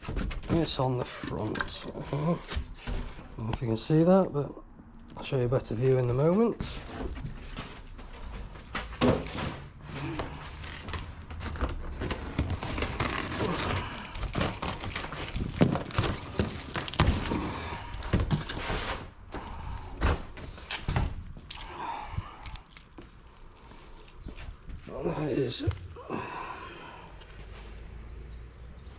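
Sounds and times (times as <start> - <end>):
rustling: 5.7 - 21.6.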